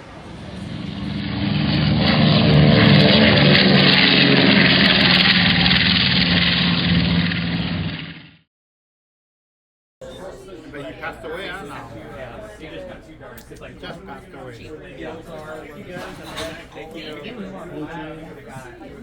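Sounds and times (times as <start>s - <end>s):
engine drone: 0.0s - 8.4s.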